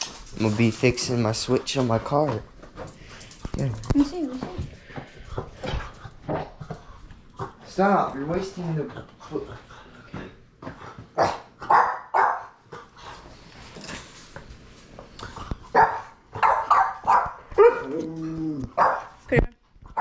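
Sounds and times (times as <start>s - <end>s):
dog barking: 11.2s - 12.6s, 15.7s - 17.9s, 18.8s - 19.2s.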